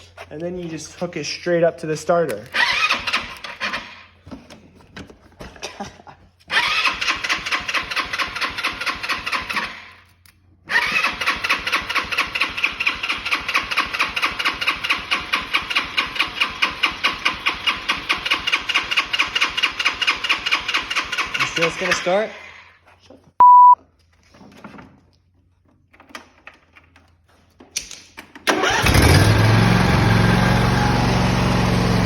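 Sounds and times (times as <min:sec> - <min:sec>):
electric starter motor cranking engine: 0:02.5 - 0:04.1, 0:06.5 - 0:09.9, 0:10.7 - 0:22.6, 0:28.4 - 0:32.0.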